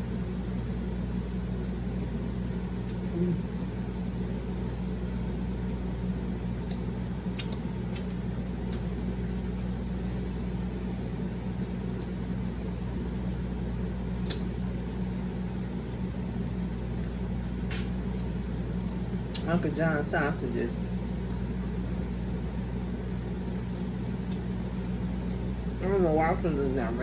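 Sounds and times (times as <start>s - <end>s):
steady low hum: 0.0s - 27.0s
eating clicks and smacks: 6.6s - 8.9s, 14.2s - 14.7s.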